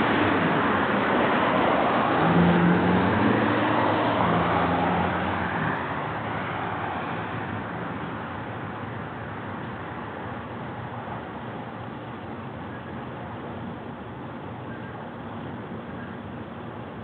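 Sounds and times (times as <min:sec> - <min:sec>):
car engine driving off: 0:00.0 - 0:08.6.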